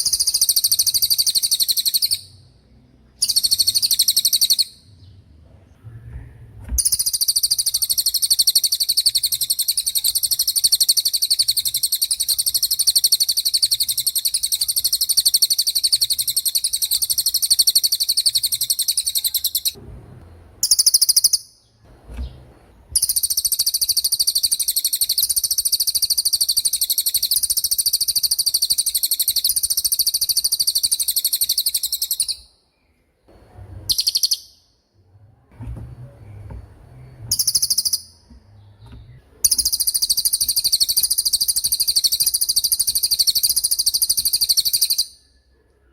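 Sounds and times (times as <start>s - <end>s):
canary high rapid trills: 6.8s - 19.8s, 39.4s - 45.1s.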